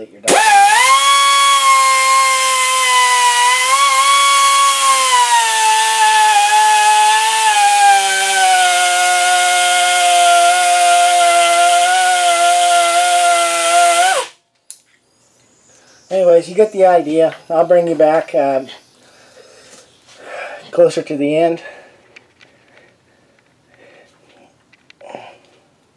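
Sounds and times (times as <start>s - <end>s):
die grinder whining: 0.3s - 14.4s.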